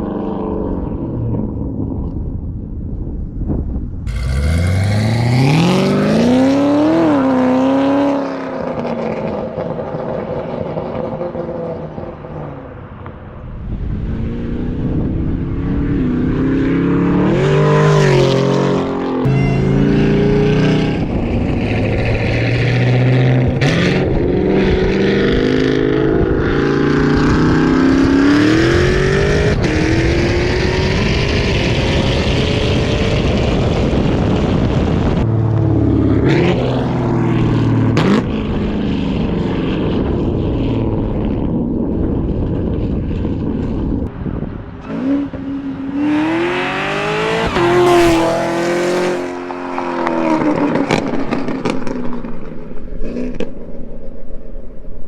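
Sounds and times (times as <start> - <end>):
exhaust cracks: 4.1 - 6.3
car engine revving: 4.1 - 9.4, 14.1 - 33.4, 35.1 - 41.5, 44.8 - 52.4.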